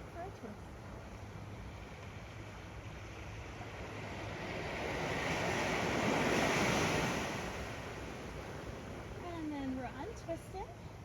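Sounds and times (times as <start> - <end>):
ocean waves washing onto sand: 0.0 - 11.0
wind on microphone: 3.4 - 11.0.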